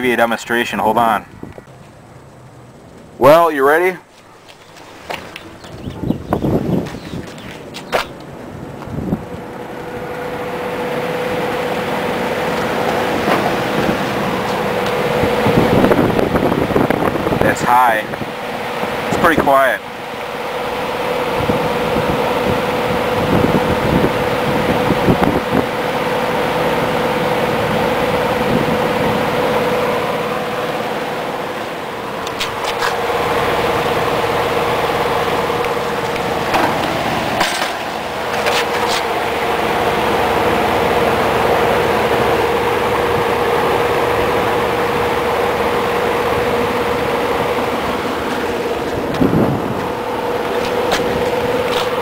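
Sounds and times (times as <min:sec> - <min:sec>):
fan motor hum: 0:00.7 - 0:52.0
box fan air rush: 0:27.6 - 0:52.0.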